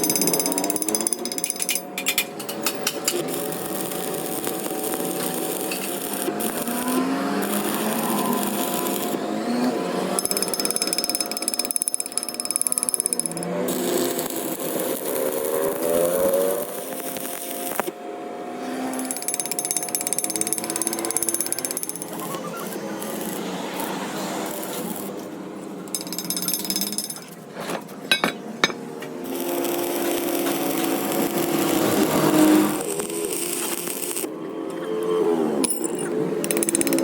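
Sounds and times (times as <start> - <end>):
power tool hammering rapidly: 0.0 - 1.9, 10.1 - 17.9, 18.9 - 25.1, 25.9 - 27.3, 28.1 - 34.3, 35.6 - 37.0.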